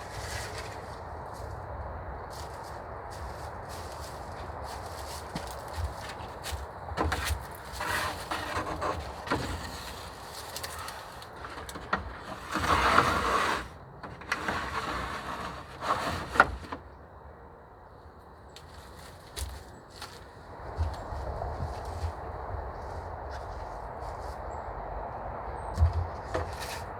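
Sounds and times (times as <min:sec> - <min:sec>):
scraping: 0:04.9 - 0:16.8, 0:25.8 - 0:26.9.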